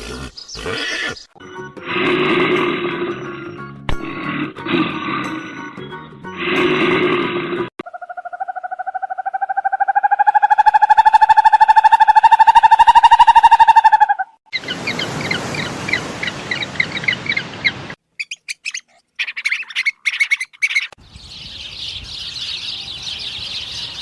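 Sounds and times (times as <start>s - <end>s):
animal roaring: 1.8s - 5.5s, 6.4s - 7.7s.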